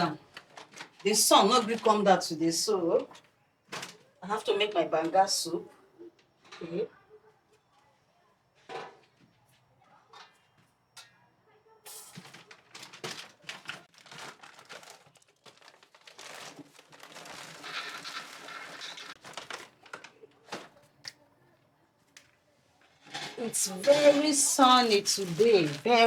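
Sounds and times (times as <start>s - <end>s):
bag rustling and crinkling: 0.0s - 2.1s, 12.0s - 20.8s, 22.9s - 26.0s.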